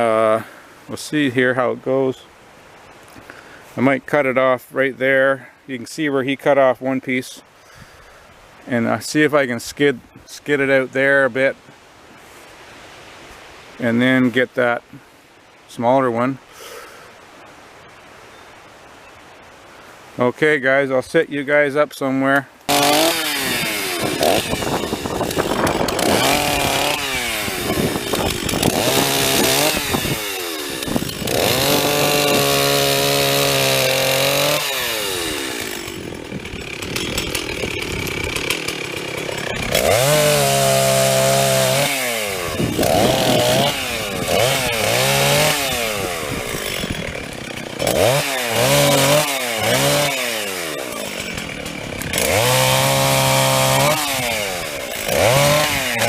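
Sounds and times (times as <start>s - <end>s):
chainsaw cutting wood: 22.7s - 56.0s.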